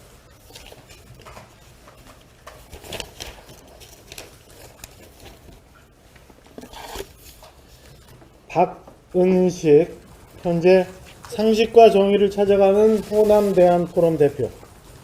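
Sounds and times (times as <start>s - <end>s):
faint clicks and rustles: 0.0s - 9.0s
steady low hum: 0.0s - 15.0s.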